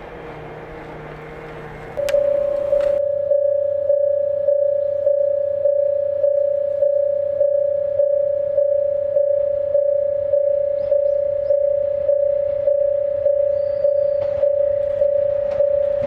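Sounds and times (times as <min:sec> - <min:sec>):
level crossing warning bell: 0:00.3 - 0:03.4, 0:11.9 - 0:16.0.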